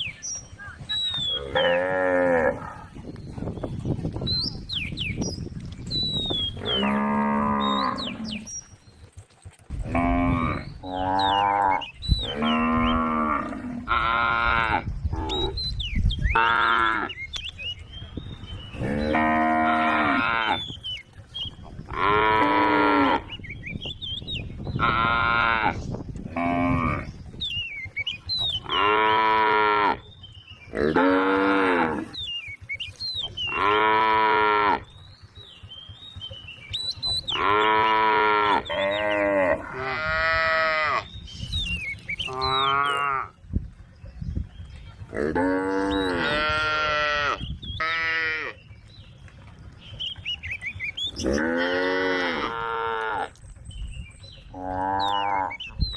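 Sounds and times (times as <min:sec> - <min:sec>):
cattle mooing: 0:01.4 - 0:02.9, 0:06.5 - 0:08.5, 0:09.8 - 0:15.5, 0:18.7 - 0:20.7, 0:21.9 - 0:23.3, 0:28.6 - 0:30.0, 0:30.7 - 0:32.2, 0:33.5 - 0:34.9, 0:37.3 - 0:41.1, 0:42.3 - 0:43.4, 0:45.1 - 0:48.6, 0:51.1 - 0:53.4, 0:54.5 - 0:55.6.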